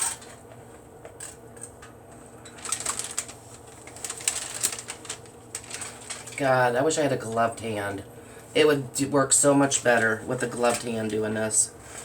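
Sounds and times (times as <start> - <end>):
hands crinkling food packaging: 2.5 - 6.4.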